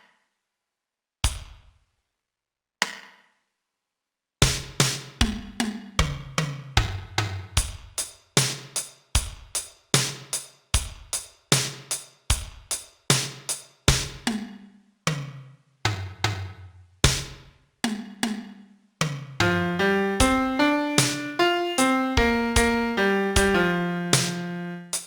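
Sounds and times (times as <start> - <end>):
drum kit beat: 19.4 - 25.0.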